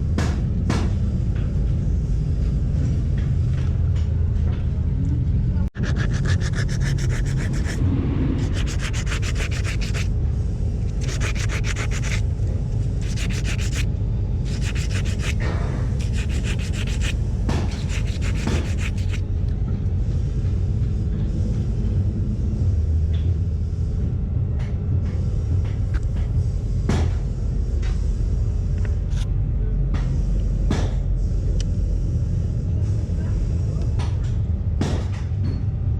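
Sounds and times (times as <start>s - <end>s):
steady low rumble: 0.0s - 34.8s
rubbing strokes with abrasive: 5.8s - 7.8s, 8.4s - 10.2s, 10.9s - 12.2s, 12.9s - 19.2s.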